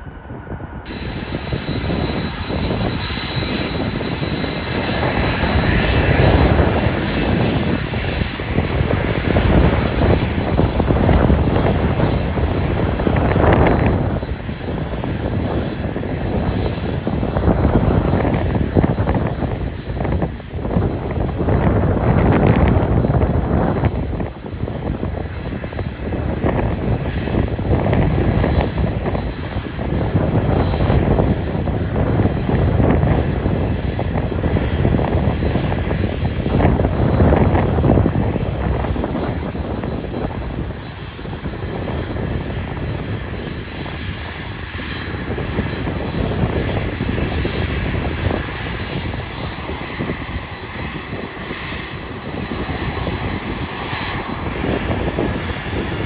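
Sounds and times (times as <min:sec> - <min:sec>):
faint high whine: 0:00.0 - 0:07.2
jet engines rumbling: 0:00.0 - 0:56.0
wind buffeting microphone: 0:00.0 - 0:56.0.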